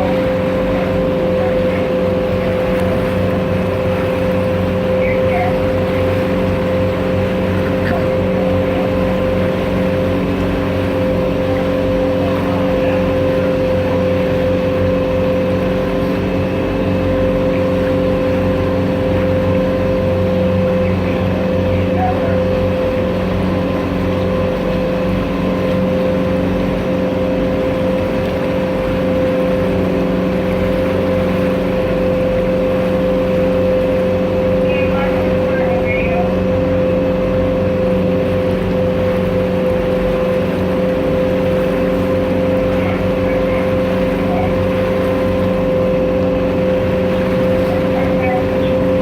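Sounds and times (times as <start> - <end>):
boat engine humming: 0.0 - 49.0
water wash against hull: 0.0 - 49.0.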